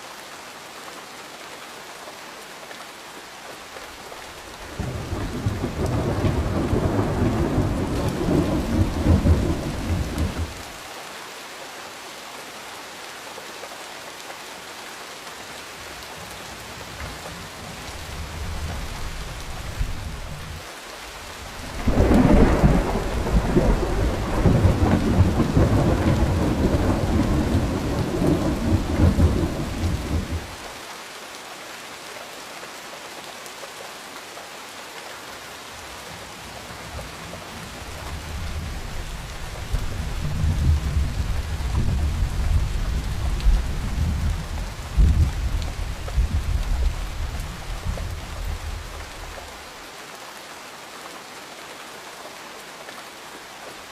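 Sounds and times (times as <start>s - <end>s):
steady rain: 0.0s - 53.9s
rolling thunder: 4.8s - 10.6s, 21.6s - 30.6s, 39.6s - 48.8s
thunder clap: 4.8s - 10.6s, 21.7s - 30.5s.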